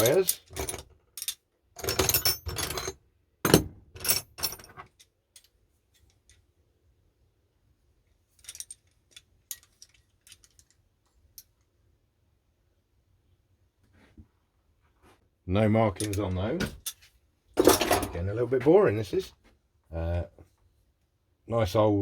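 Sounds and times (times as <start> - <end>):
pliers clinking and clattering: 0.0 - 6.4, 8.4 - 11.6, 16.0 - 18.2.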